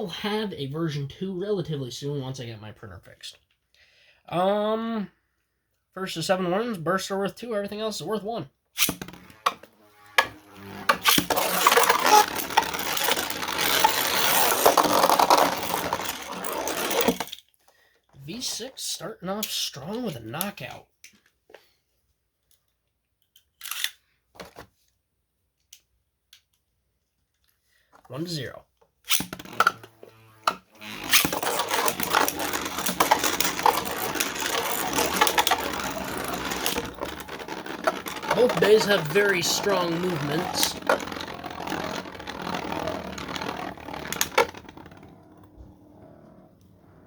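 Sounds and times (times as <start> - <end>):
ratcheting spinning top launchers: 8.8 - 17.3, 29.1 - 47.0
spinning tops scraping and rattling: 8.8 - 17.3, 29.1 - 47.0.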